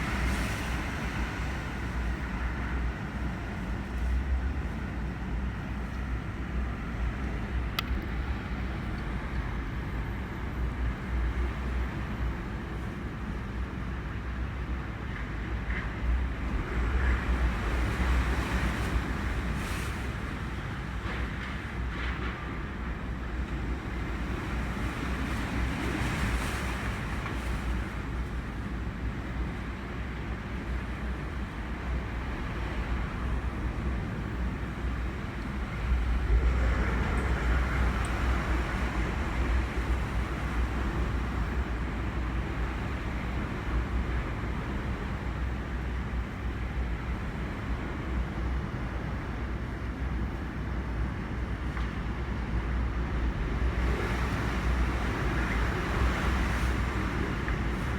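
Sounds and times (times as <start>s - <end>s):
gusting wind: 0.0s - 57.9s
wind buffeting microphone: 31.0s - 48.6s, 49.5s - 57.9s.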